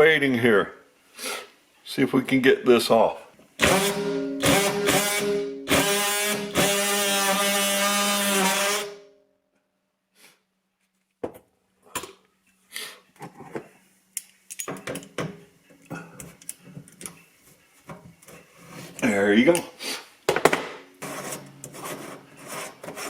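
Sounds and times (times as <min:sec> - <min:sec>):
power tool motor whine: 0:03.6 - 0:09.0
metal parts knocking and clinking: 0:14.2 - 0:15.2.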